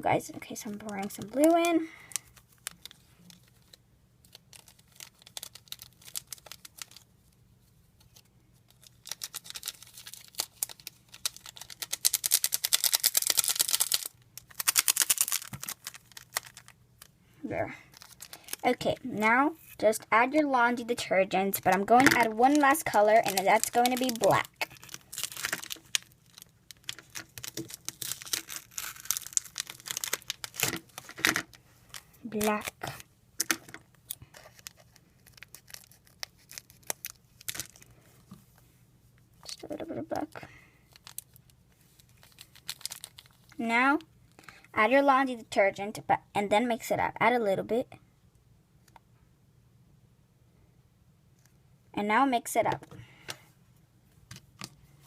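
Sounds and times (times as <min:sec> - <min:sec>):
plastic packaging crinkling: 0:00.6 - 0:07.3, 0:08.0 - 0:17.1, 0:17.9 - 0:19.0, 0:21.5 - 0:38.3, 0:40.9 - 0:43.6
glitter rattling in plastic container: 0:21.6 - 0:26.0.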